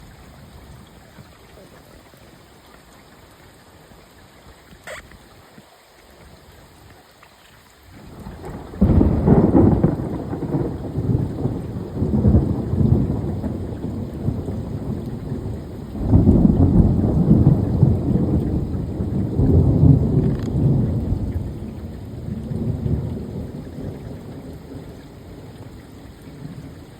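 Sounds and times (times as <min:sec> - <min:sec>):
thunder rumbling: 0:08.0 - 0:26.9.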